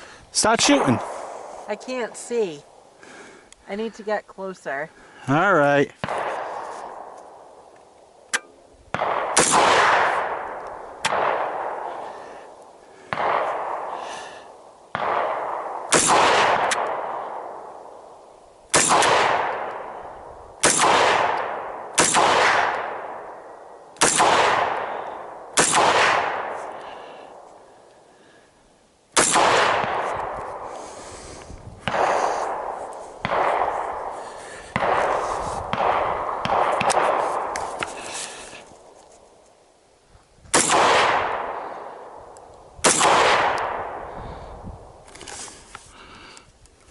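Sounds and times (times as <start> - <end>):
rifle shots echoing: 0.4 - 2.7, 6.0 - 7.6, 8.2 - 27.6, 29.1 - 31.1, 31.8 - 38.9, 40.5 - 44.4.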